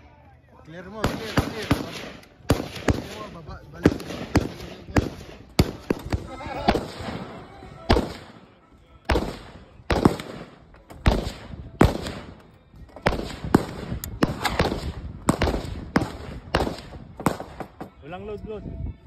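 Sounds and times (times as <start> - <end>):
gunshots with echo: 1.0 - 7.3, 7.9 - 8.4, 9.1 - 12.4, 13.0 - 17.8.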